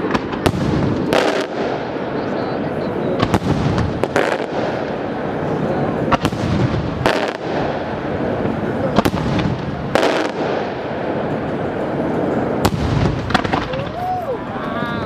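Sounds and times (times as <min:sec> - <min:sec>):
fireworks sharp bangs: 0:00.0 - 0:14.2
rumble of explosions: 0:00.0 - 0:15.0.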